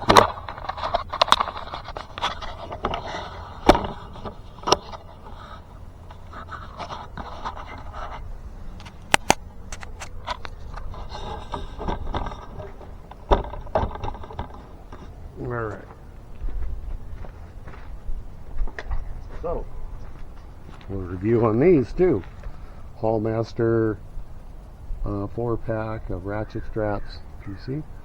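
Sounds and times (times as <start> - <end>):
sharp clicks and knocks: 0.0 - 5.4, 8.8 - 15.2
scraping and handling noises: 0.0 - 15.9.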